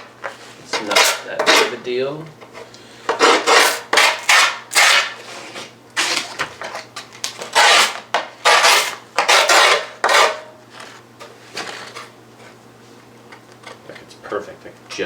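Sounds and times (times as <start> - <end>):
tool rasping on grip tape: 7.5 - 10.3.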